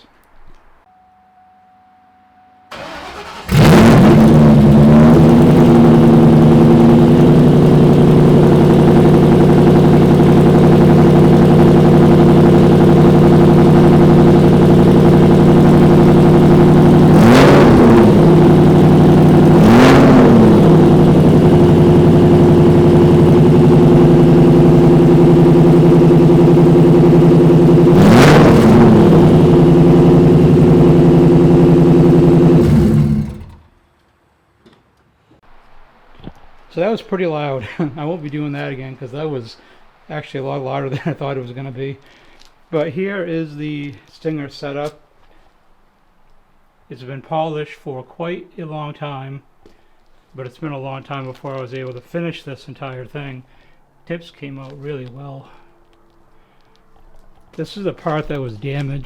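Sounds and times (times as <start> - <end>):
engine cranking: 2.7 - 33.7
engine revving: 2.7 - 33.7
loud engine idling: 2.7 - 33.7.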